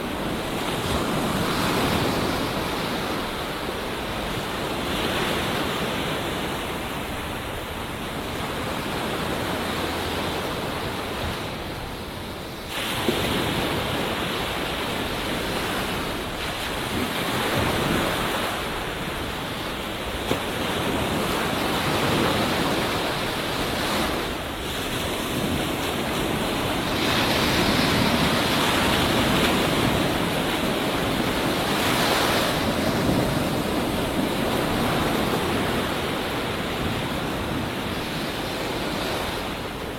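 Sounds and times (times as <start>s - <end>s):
waves breaking on a beach: 0.0s - 39.9s.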